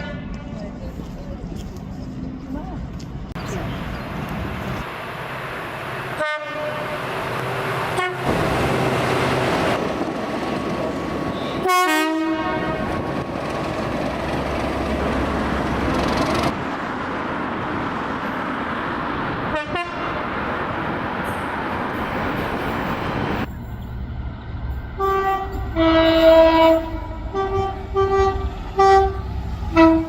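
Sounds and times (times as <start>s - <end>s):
moving train rumble: 0.0s - 30.0s
train horn blasts: 6.2s - 7.0s, 7.9s - 8.4s, 11.3s - 13.0s, 19.5s - 20.2s, 25.0s - 30.0s.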